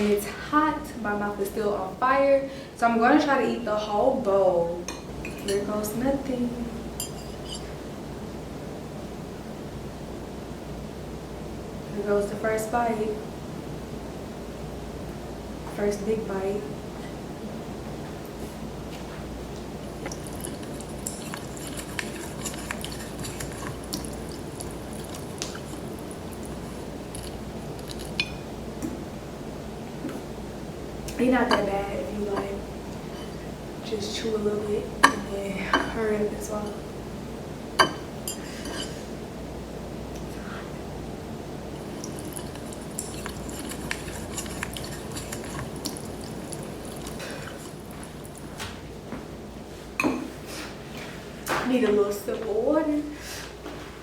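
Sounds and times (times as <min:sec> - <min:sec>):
low background noise: 0:00.0 - 0:54.0
wet chewing of noodles: 0:19.8 - 0:28.4, 0:41.7 - 0:48.6
mouth clicks and smacks: 0:20.0 - 0:28.2.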